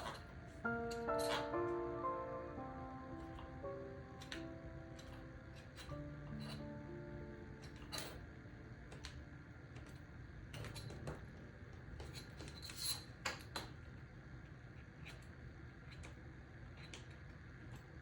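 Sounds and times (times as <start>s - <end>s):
sculpting tools clicking and tapping: 3.1s - 14.0s.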